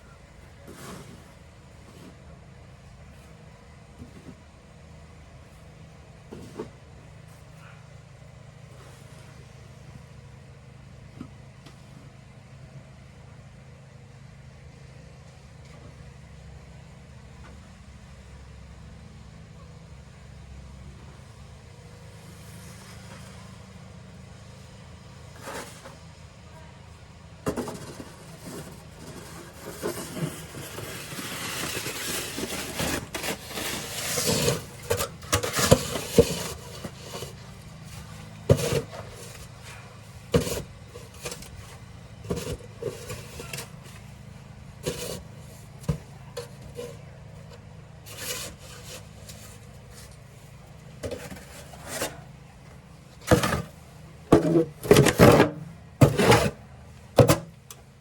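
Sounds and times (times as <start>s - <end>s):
snow shovel scraping snow: 0.7s - 1.4s, 25.4s - 26.0s, 27.5s - 44.0s, 44.8s - 45.7s, 48.0s - 50.2s, 54.4s - 56.6s.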